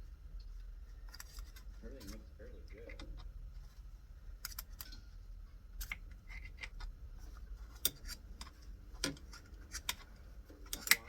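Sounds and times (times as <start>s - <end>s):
low steady hum: 0.0s - 11.0s
small tools clicking and tapping: 4.4s - 5.1s, 7.7s - 11.0s.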